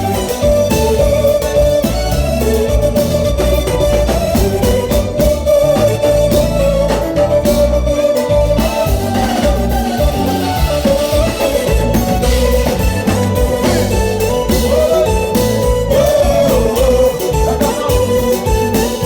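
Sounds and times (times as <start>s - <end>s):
organ-like keyboard music with bass: 0.0s - 19.0s.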